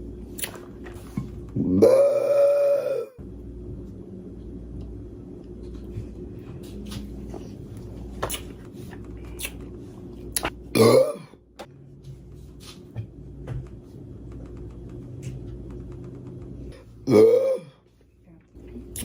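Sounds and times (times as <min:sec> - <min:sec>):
woman burping: 0:10.8 - 0:11.4, 0:17.0 - 0:17.8.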